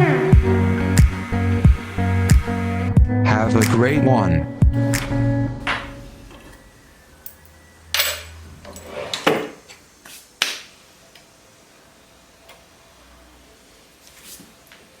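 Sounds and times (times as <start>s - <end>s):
low hum: 0.0s - 8.7s.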